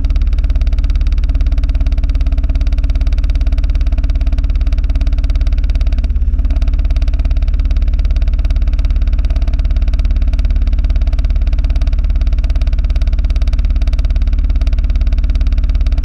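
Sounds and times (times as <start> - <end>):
small motorcycle engine running: 0.0 - 16.0.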